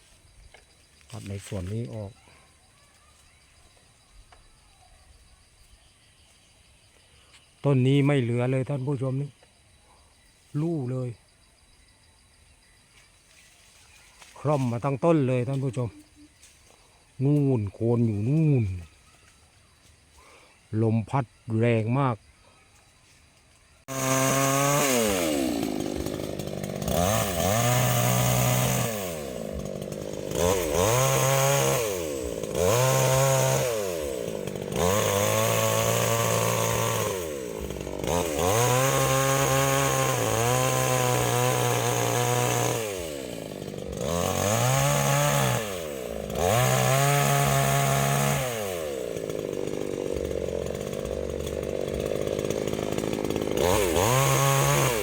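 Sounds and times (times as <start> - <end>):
chainsaw revving and idling: 23.8 - 55.0.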